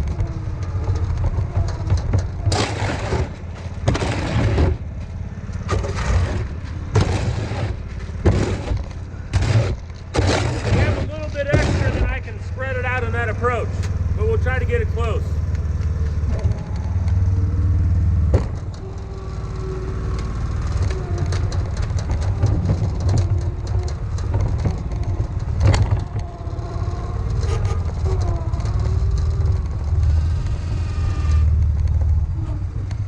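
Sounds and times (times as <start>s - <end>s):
diesel truck engine running: 0.0s - 33.0s
sharp knocks: 5.6s - 12.2s
scrapes and clicks: 18.4s - 33.0s.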